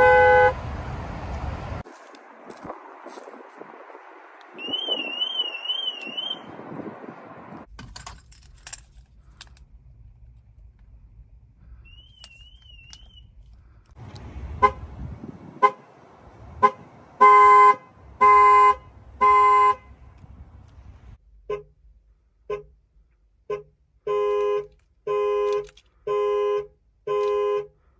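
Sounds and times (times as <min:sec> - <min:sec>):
car horn alarm honking: 0:00.0 - 0:00.6, 0:14.3 - 0:20.2, 0:23.5 - 0:27.7.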